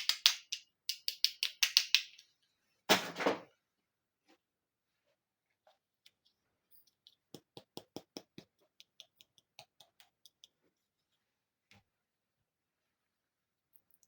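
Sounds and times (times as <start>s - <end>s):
plastic toy pieces clicking: 0.0s - 2.2s.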